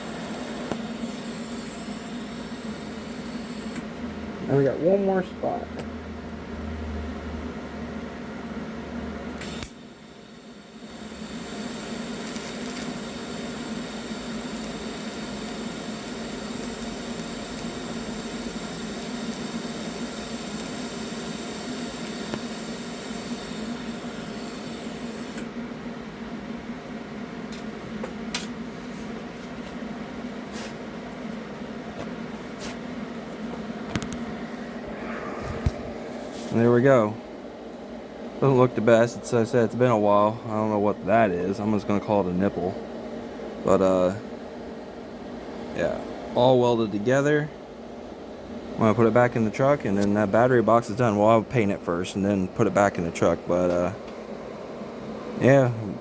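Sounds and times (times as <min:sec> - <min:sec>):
welding arc buzzing hiss: 0:00.0 - 0:05.1, 0:09.3 - 0:25.6, 0:26.2 - 0:37.2, 0:48.8 - 0:54.2.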